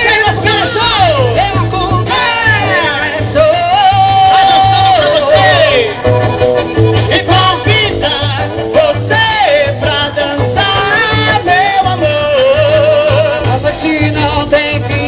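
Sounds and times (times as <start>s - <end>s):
live folk dance band music: 0.0s - 15.0s.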